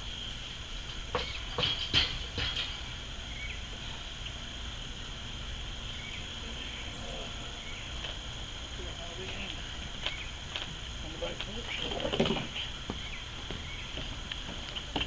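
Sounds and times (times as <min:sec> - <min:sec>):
high drone of insects: 0:00.0 - 0:15.0
sharp knocks: 0:01.1 - 0:02.8.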